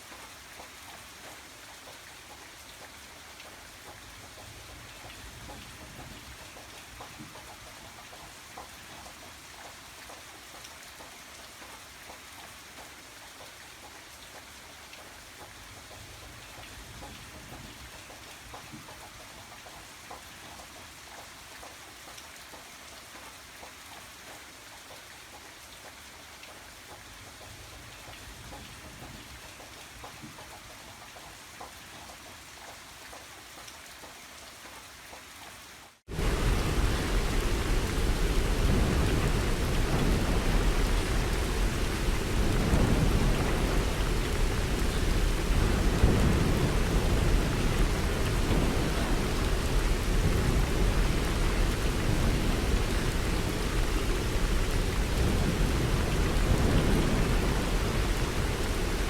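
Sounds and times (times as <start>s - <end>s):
rain falling: 0.0s - 59.0s
raindrops ticking: 36.1s - 59.0s.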